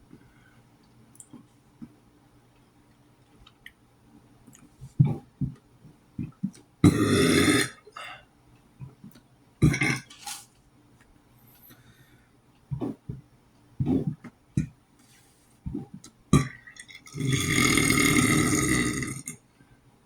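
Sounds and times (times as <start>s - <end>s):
man burping: 6.8s - 8.2s, 9.6s - 10.1s, 16.4s - 19.4s.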